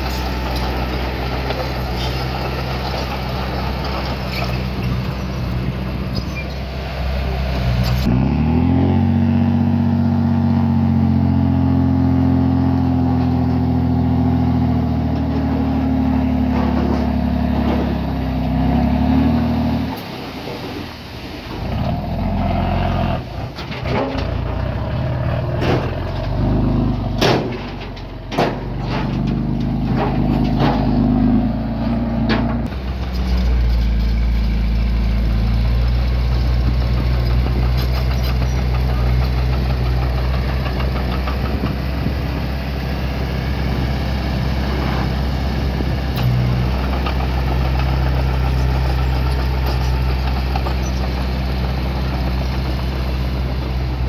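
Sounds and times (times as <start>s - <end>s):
diesel engine running: 0.0s - 54.0s
metallic clanks and knocks: 25.6s - 31.2s, 31.8s - 33.3s.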